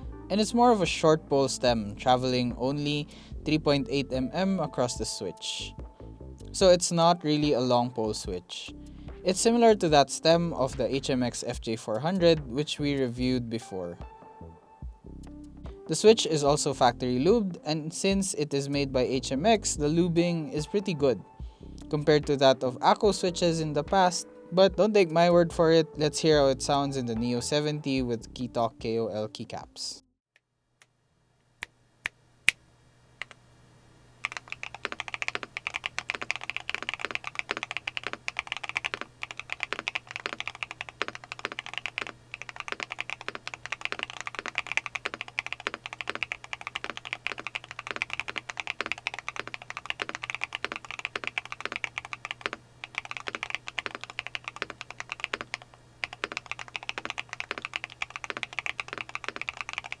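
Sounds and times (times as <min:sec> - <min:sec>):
faint steady hum: 0:30.5 - 1:00.0
mechanical keyboard typing: 0:34.2 - 1:00.0.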